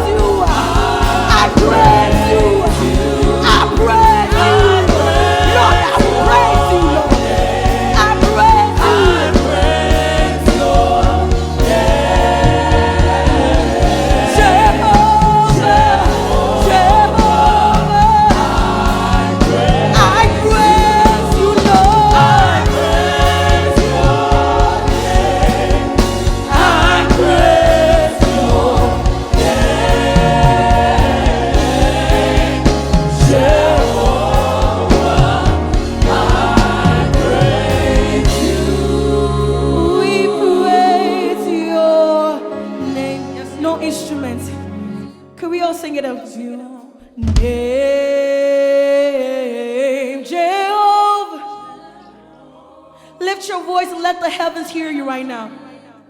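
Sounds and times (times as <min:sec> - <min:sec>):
band with bass and drums: 0:00.0 - 0:39.4
choir singing: 0:00.0 - 0:45.1, 0:47.4 - 0:56.0.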